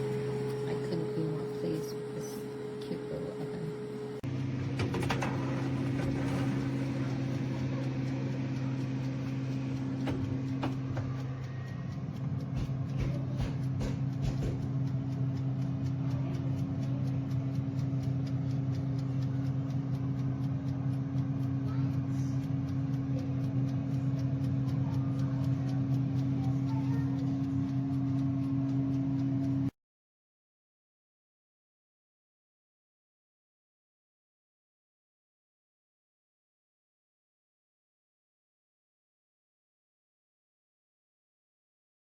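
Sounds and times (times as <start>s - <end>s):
air fryer motor and fan hum: 0.0s - 29.7s.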